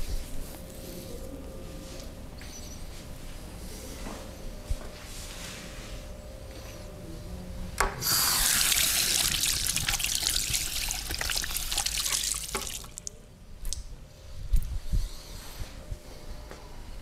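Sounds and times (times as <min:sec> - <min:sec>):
water running and splashing: 0:08.3 - 0:13.1.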